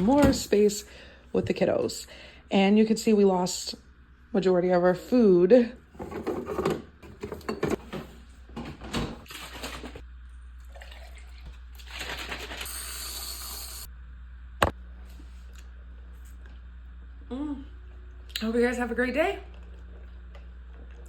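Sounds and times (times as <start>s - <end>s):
liquid running: 10.6s - 13.8s.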